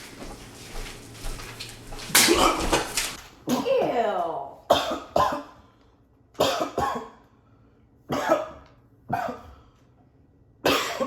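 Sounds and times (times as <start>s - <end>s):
person coughing harshly: 2.2s - 2.8s, 4.7s - 5.6s, 6.4s - 7.2s, 8.1s - 9.6s, 10.6s - 11.0s.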